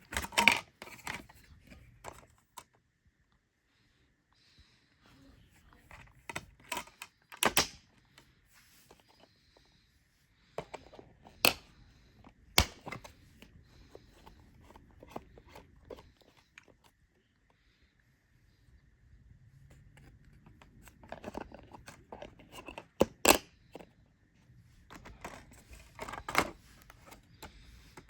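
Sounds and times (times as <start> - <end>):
plastic clicks and snaps: 6.0 - 7.8, 12.6 - 13.1.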